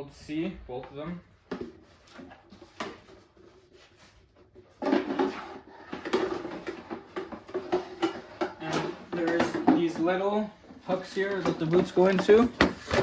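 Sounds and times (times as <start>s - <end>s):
hands handling plastic parts: 10.8s - 13.0s.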